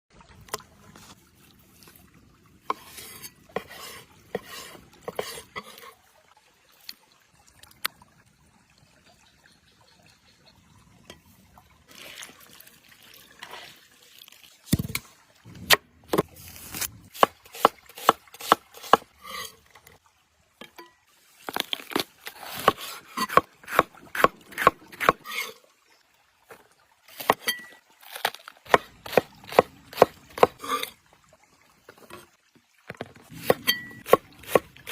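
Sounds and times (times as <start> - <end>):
liquid sounds: 0.1 - 34.9.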